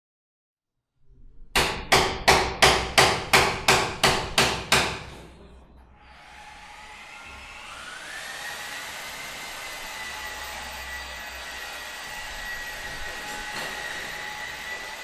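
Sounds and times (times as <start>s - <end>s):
hammer blows ringing: 1.6s - 5.6s.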